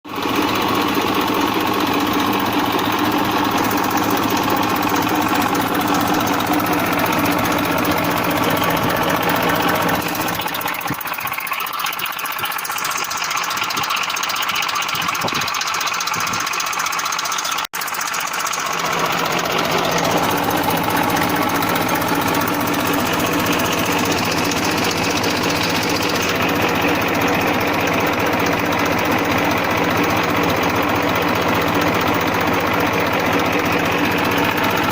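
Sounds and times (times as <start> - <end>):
tractor diesel engine idling: 0.0 - 34.9.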